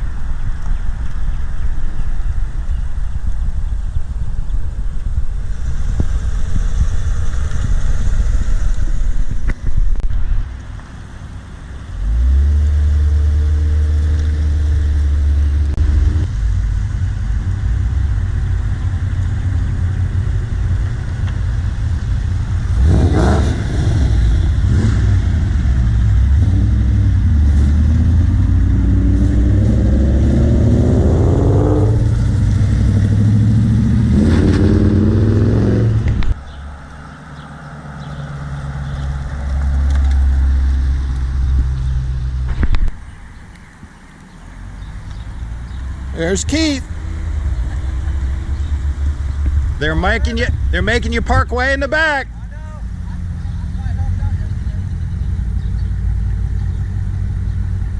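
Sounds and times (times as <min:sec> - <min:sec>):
car engines rumbling past: 0:00.0 - 0:57.9
engine revving: 0:12.0 - 0:42.8, 0:45.0 - 0:57.9.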